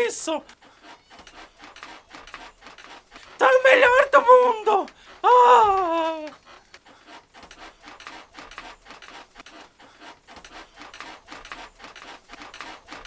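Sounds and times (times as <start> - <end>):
hands rubbing skin: 0.0 - 13.0.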